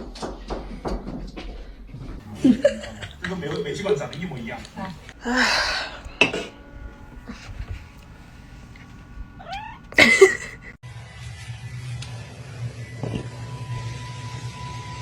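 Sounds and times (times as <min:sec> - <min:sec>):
cat yowling: 0:09.4 - 0:10.6.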